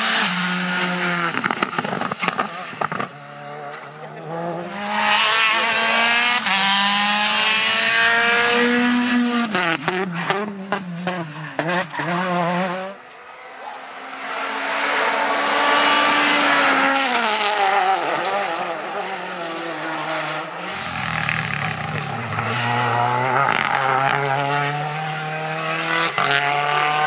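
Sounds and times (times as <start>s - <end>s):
rally car engine at high revs: 0.0s - 27.0s.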